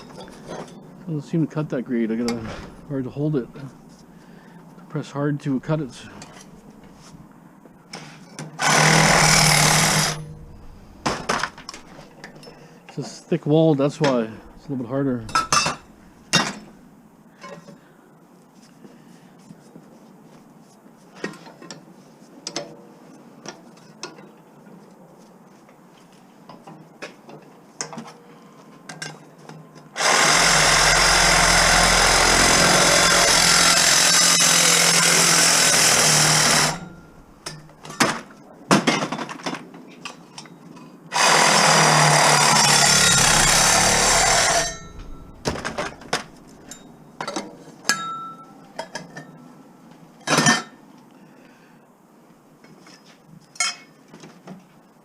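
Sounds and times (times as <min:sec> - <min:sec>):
power tool running: 0:08.6 - 0:12.2, 0:30.0 - 0:37.7, 0:41.1 - 0:46.9.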